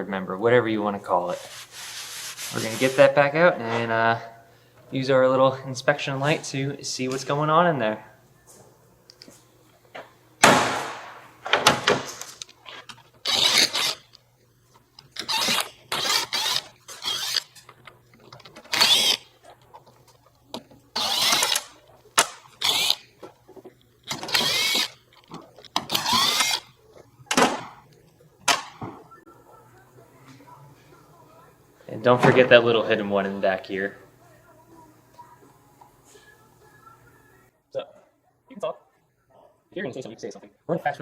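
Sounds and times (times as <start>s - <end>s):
power tool whining in bursts: 15.2s - 17.5s, 18.7s - 19.3s, 21.0s - 21.7s, 22.5s - 23.0s, 24.1s - 25.0s, 25.8s - 26.7s.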